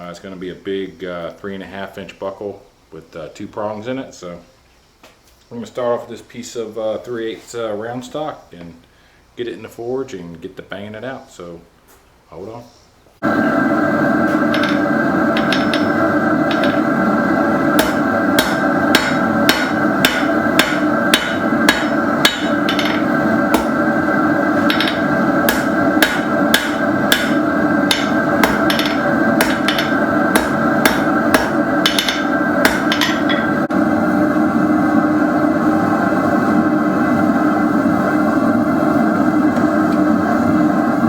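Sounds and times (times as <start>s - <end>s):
loud steady drone: 13.2s - 36.8s
hammer striking steel on anvil: 14.3s - 24.0s, 24.6s - 33.7s.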